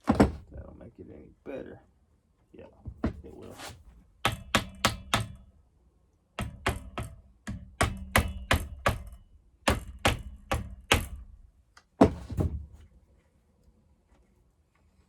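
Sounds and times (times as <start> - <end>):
hammer tapping on metal punch: 4.2 - 5.4, 6.4 - 11.3.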